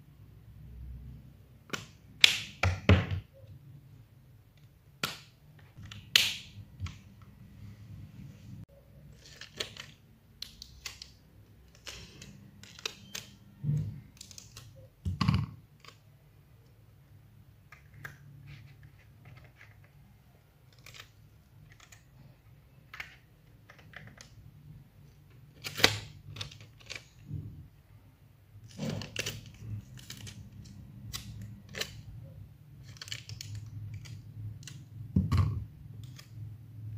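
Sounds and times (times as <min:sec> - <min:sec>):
hands handling craft materials: 0:17.6 - 0:24.4.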